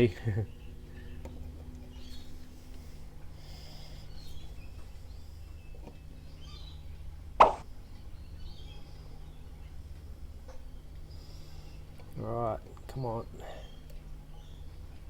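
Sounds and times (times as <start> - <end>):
steady low hum: 0.0 - 15.0
short sharp tap: 7.4 - 7.7.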